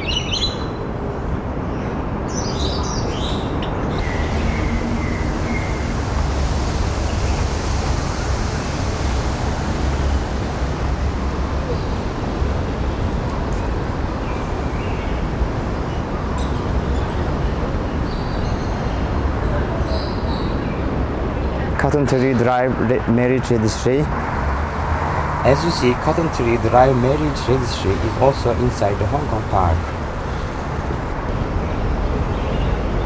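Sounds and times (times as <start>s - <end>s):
waterfall rushing: 4.0s - 17.9s, 24.2s - 31.5s.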